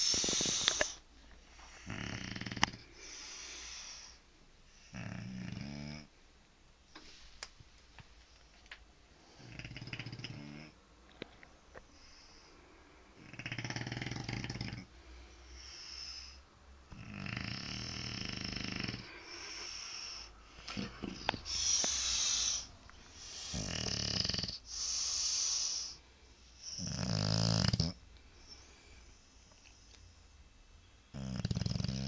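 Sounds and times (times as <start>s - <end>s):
hissing breaths: 0.0s - 2.0s, 18.7s - 27.0s
pet snoring: 1.6s - 4.0s, 4.8s - 6.1s, 9.3s - 10.8s, 13.2s - 14.9s, 15.8s - 26.0s, 26.6s - 28.0s, 31.1s - 32.0s.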